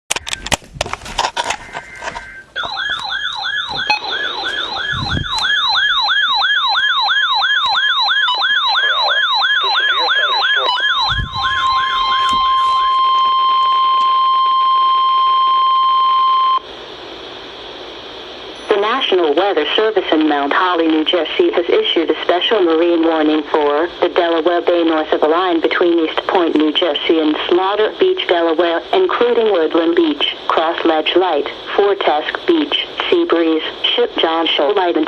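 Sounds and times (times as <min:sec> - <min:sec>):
steady attention tone: 0:01.4 - 0:19.4
buzzy data tones: 0:01.5 - 0:14.7
warbling siren alarm: 0:01.5 - 0:16.6
faint radio hiss: 0:08.6 - 0:14.1, 0:16.6 - 0:35.0.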